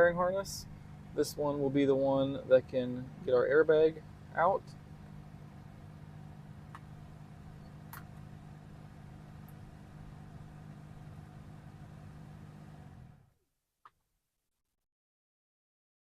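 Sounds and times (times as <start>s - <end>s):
low mechanical hum: 0.0s - 13.4s.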